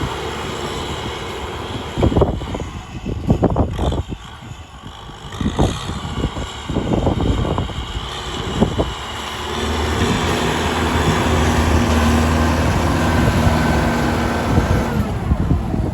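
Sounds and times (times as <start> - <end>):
tractor diesel engine running: 0.0 - 15.9.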